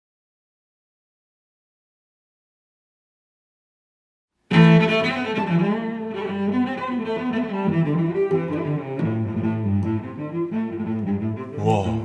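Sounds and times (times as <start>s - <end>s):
bowed strings music: 4.5s - 12.0s.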